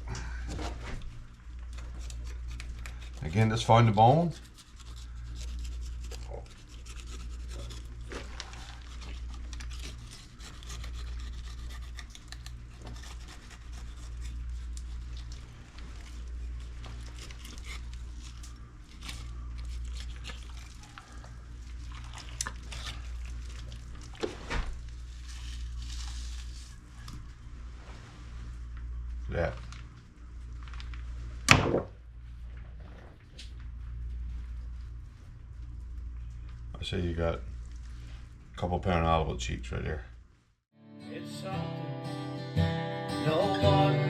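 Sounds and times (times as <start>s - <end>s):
steady low hum: 0.0s - 40.7s
wet rubbing and scratching: 1.5s - 28.7s
knife scraping along bone: 1.7s - 21.2s.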